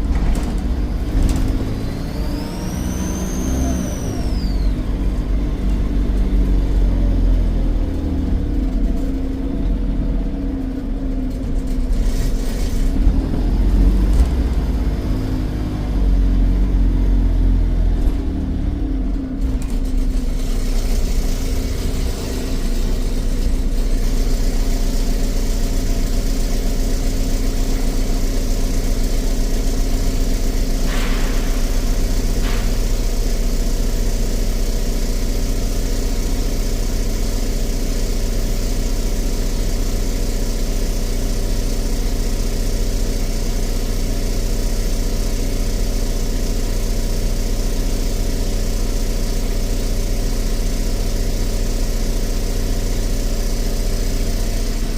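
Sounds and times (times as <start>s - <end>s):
diesel engine idling: 0.0s - 54.9s
short hiss: 30.8s - 33.5s.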